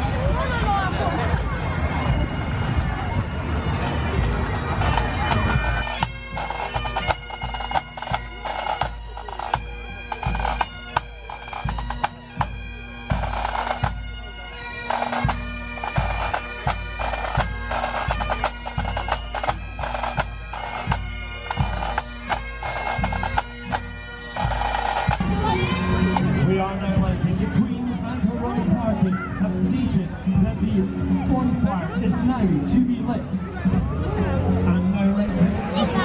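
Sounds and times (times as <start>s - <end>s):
bagpipes playing: 3.6s - 26.4s
drums beating: 4.1s - 26.2s.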